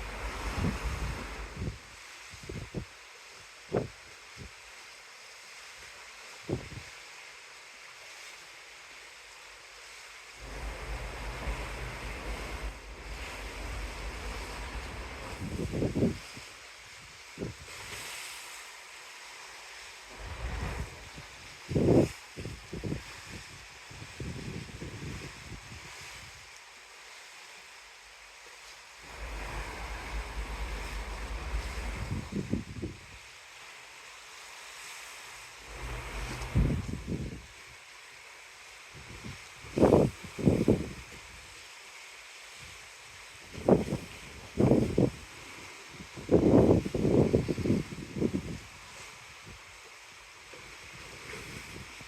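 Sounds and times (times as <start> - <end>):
wind buffeting the microphone: 0.0 - 2.9, 3.7 - 4.6, 6.5 - 6.9, 10.4 - 18.2, 20.1 - 26.4, 29.0 - 33.3, 35.6 - 37.8, 39.0 - 41.5, 43.4 - 49.7, 50.7 - 52.0
sea rushing: 0.0 - 52.0.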